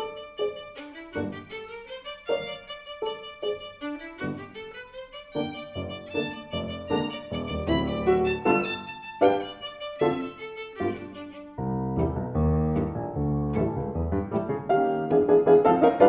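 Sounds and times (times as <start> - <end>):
jazz melody: 5.3 - 16.0
bass line: 6.8 - 8.5.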